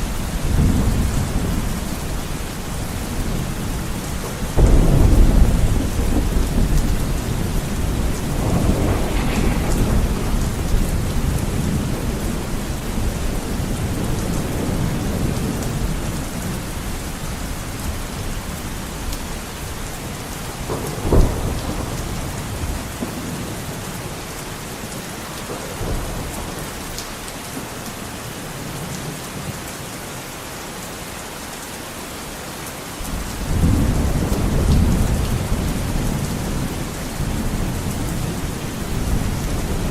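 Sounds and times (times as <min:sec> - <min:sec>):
thunder rumble: 0:00.0 - 0:24.0, 0:33.1 - 0:39.9
heavy rain on a window: 0:00.0 - 0:39.9
thunder clap: 0:04.5 - 0:16.2, 0:20.5 - 0:23.6, 0:33.1 - 0:39.9.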